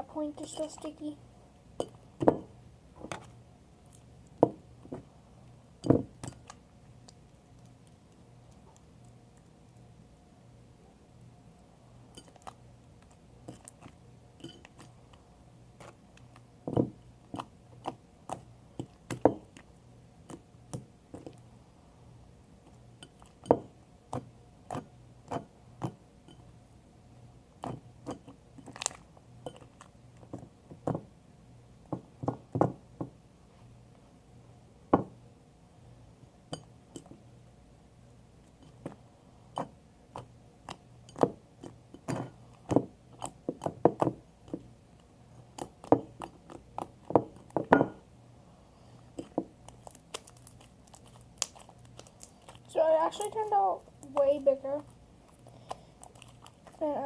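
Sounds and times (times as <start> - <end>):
slime clicking and popping: 49.7 - 52.6.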